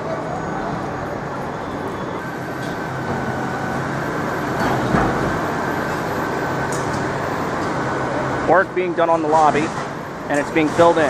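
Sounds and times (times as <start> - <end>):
faint steady whine: 0.0 - 11.0
street traffic noise: 0.0 - 11.0.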